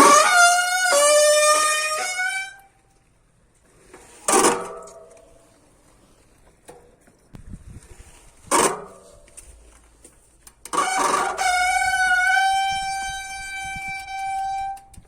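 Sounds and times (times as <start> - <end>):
bicycle brake squealing: 0.0 - 2.7, 10.7 - 15.0.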